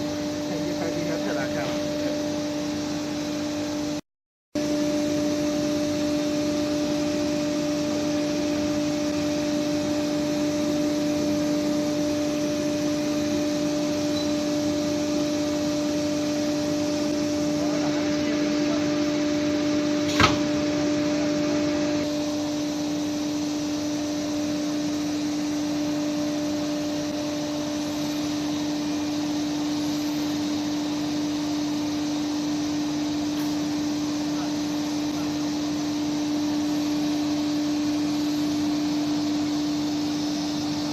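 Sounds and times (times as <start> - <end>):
cnc router humming: 0.0 - 4.0, 4.6 - 40.9.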